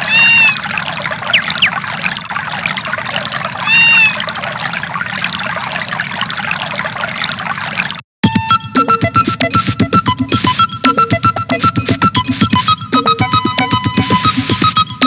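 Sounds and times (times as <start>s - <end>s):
high animal-like calls: 0.0s - 4.6s
running water: 0.0s - 8.0s, 9.2s - 15.0s.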